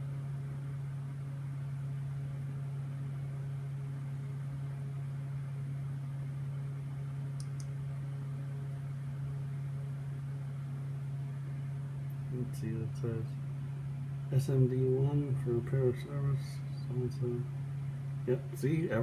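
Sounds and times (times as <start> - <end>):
low machine hum: 0.0 - 19.0
quick light clicks: 7.4 - 7.8.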